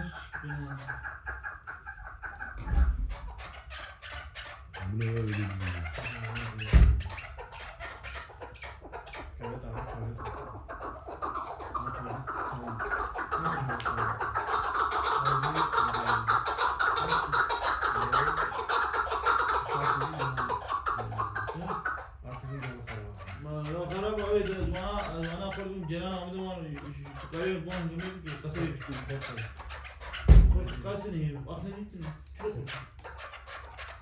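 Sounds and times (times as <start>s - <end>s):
partridge calling: 0.0s - 34.0s
loud thump: 30.3s - 30.7s.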